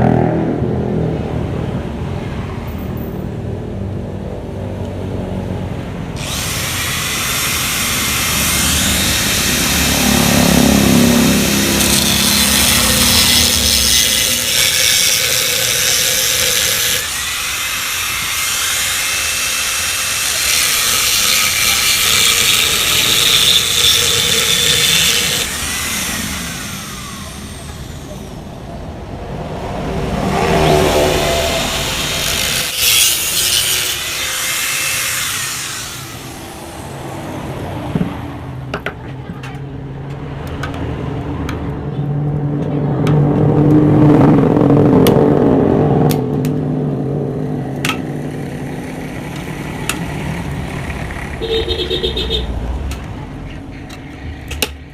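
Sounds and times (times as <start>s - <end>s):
angle grinder cutting metal: 6.2s - 28.4s, 30.6s - 37.0s, 47.8s - 52.4s.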